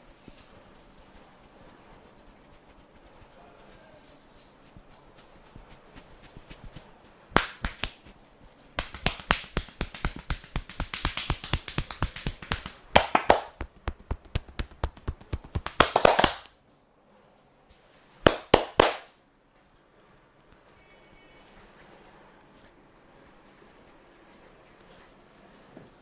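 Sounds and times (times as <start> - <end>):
hands tapping and slapping body: 5.6 - 8.2, 8.8 - 16.5, 18.2 - 19.1.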